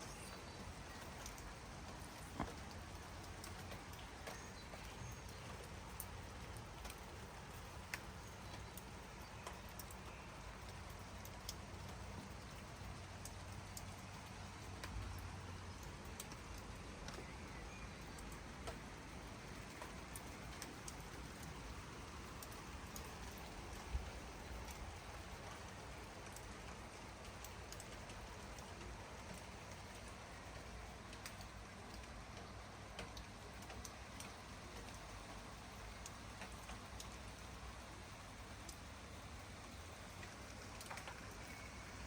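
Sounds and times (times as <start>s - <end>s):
faint bird chirps: 0.0s - 6.4s, 16.8s - 18.6s, 41.0s - 42.0s
light rain hiss: 0.0s - 42.0s
raindrops ticking on leaves: 0.0s - 42.0s.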